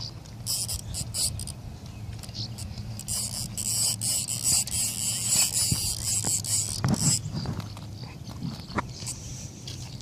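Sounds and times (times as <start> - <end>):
fishing reel whirring: 0.0 - 7.9.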